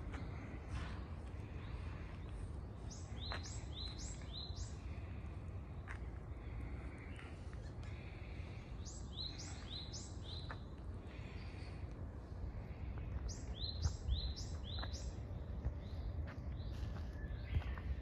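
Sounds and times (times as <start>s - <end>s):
low outdoor background hum: 0.0s - 18.0s
songbird calling: 2.8s - 5.0s, 8.8s - 10.6s, 13.2s - 18.0s.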